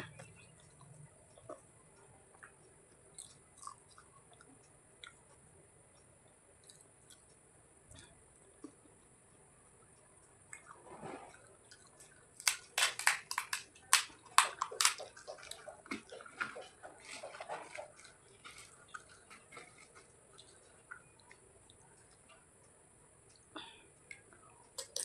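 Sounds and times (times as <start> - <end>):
wet chewing: 0.1 - 5.4, 6.0 - 9.1, 10.0 - 25.0.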